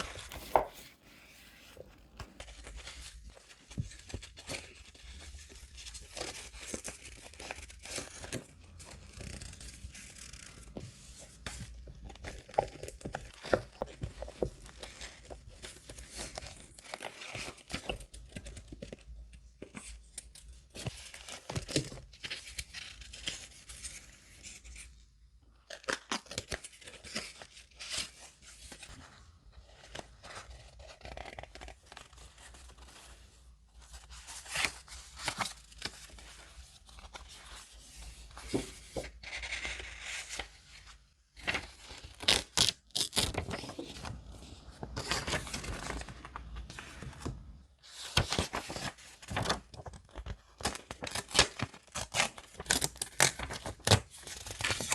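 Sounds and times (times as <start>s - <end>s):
paper tearing and handling: 0.0s - 2.4s, 41.4s - 43.9s, 48.1s - 54.9s.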